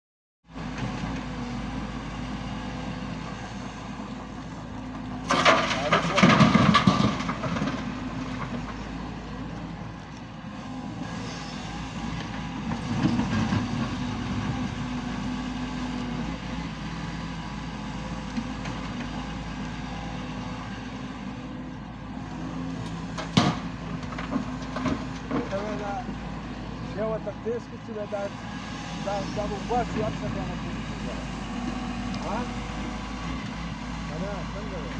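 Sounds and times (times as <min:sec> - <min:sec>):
excavator running: 0:00.5 - 0:34.9
loud clatter: 0:05.2 - 0:08.6.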